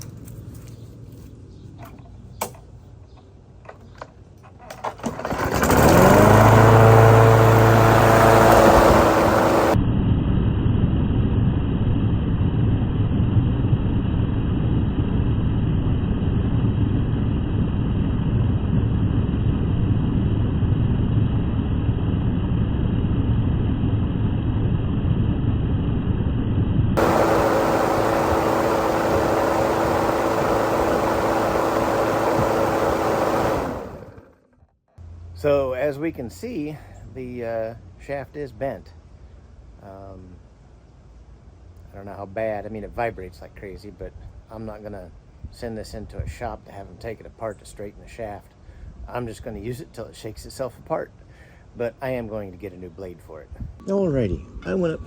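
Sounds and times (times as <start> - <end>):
lawnmower engine running: 3.7 - 9.8, 27.0 - 34.6.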